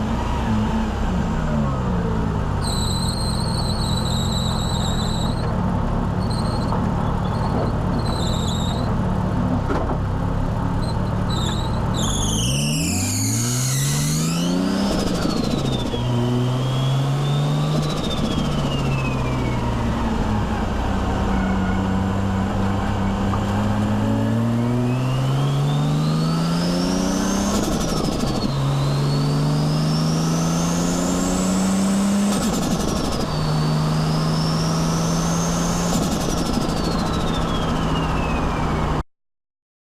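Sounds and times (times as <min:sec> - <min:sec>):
high belt squeal: 0:02.6 - 0:05.4, 0:06.2 - 0:08.9, 0:10.8 - 0:19.1
high turbo whine: 0:10.5 - 0:39.0
car engine revving through gears: 0:11.3 - 0:37.5.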